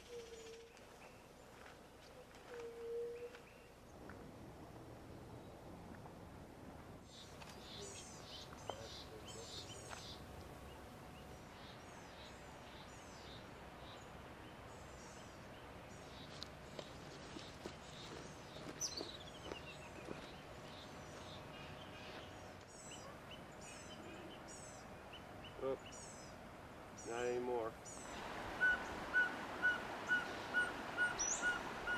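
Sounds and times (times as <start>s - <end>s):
background hiss: 0.0s - 31.9s
songbirds chirping: 7.0s - 31.9s.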